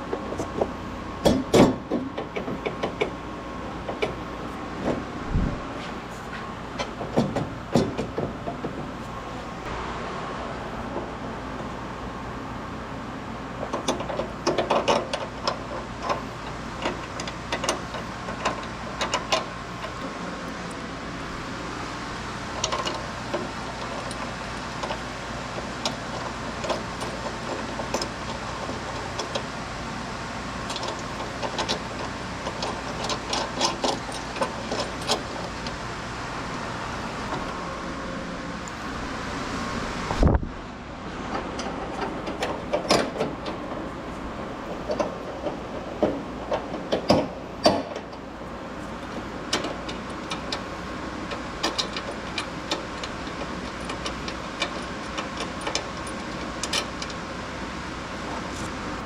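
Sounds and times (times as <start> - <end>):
low mechanical hum: 0.0 - 59.0
irregular clicks and knocks: 0.1 - 3.2, 3.8 - 4.2, 6.8 - 8.9, 13.6 - 20.1, 22.6 - 25.0, 30.7 - 35.8, 44.7 - 48.2, 49.0 - 57.2.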